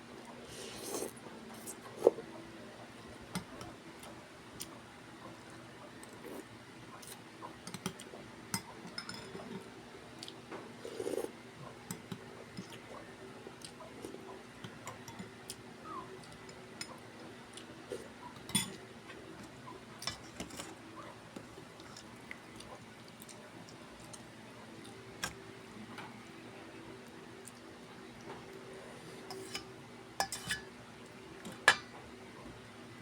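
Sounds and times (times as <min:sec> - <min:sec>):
utensils clinking against a dish: 0:08.6 - 0:09.6, 0:18.4 - 0:18.8, 0:29.3 - 0:30.7, 0:31.4 - 0:32.0
chewing: 0:20.0 - 0:25.4.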